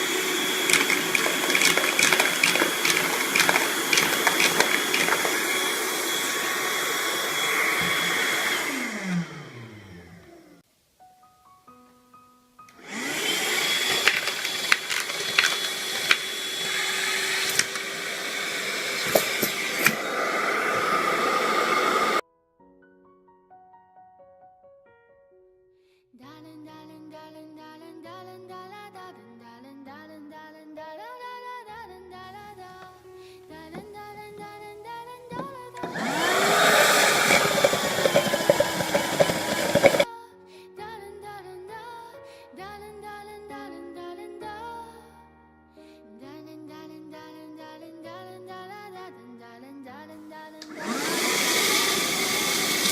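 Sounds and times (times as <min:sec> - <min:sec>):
vacuum cleaner motor whine: 0:00.0 - 0:10.6, 0:12.8 - 0:22.2, 0:35.3 - 0:40.1, 0:50.6 - 0:52.9
background music: 0:11.0 - 0:16.4, 0:20.6 - 0:51.2.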